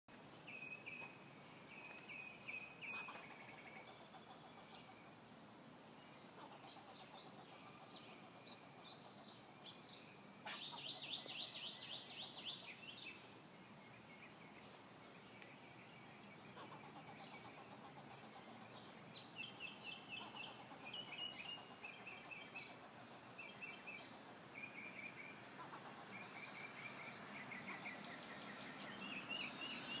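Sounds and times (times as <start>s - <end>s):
squirrel chattering alarm calls: 2.8s - 5.2s, 6.3s - 9.8s, 10.4s - 12.8s, 16.5s - 28.4s.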